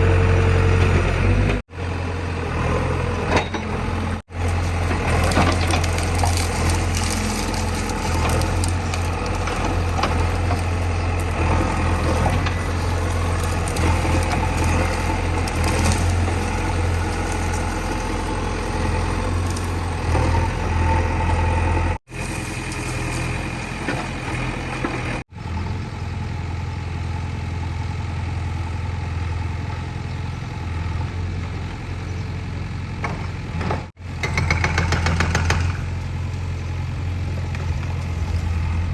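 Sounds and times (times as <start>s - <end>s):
diesel engine humming: 0.0s - 38.9s
brickwork grinding and crunching: 2.5s - 25.3s, 32.9s - 38.9s.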